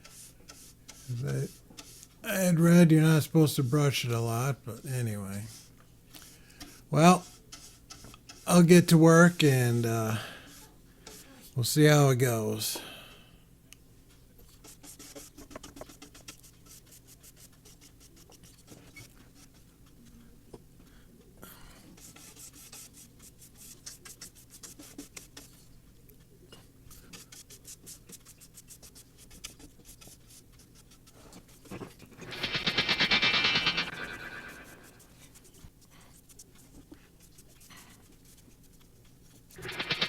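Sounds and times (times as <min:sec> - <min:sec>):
paintbrush scratching on wood: 0:00.0 - 0:02.2, 0:02.9 - 0:08.8, 0:14.4 - 0:20.2, 0:21.9 - 0:25.7, 0:26.9 - 0:40.0.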